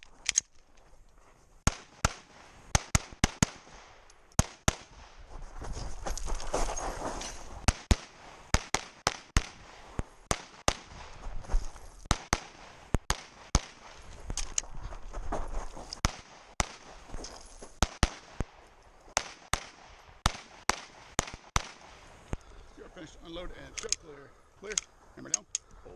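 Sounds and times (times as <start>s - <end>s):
pistol shots: 1.6s - 5.0s, 7.7s - 11.0s, 12.1s - 14.0s, 19.2s - 21.9s.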